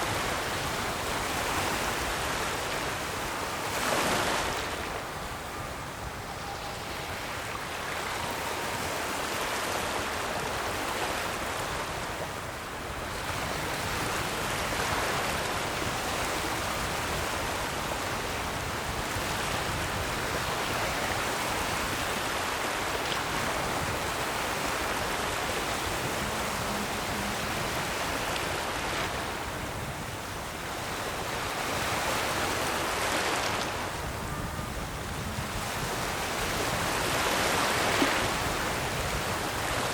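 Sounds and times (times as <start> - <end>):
ocean waves breaking on shore: 0.0 - 39.9.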